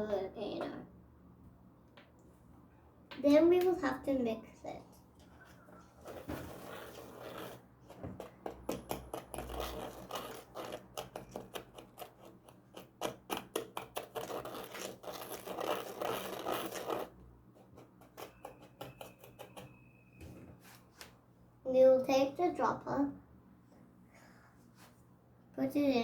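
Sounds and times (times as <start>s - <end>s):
stirrer scraping and clicking: 5.2s - 19.9s.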